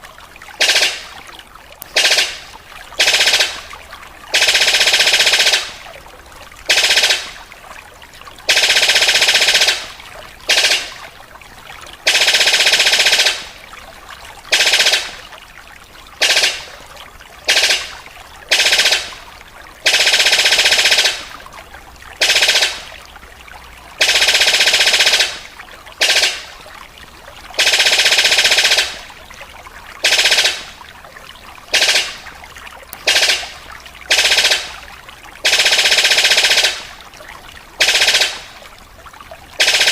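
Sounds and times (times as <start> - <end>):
bird rattling calls: 10.5 - 11.0, 16.2 - 16.7.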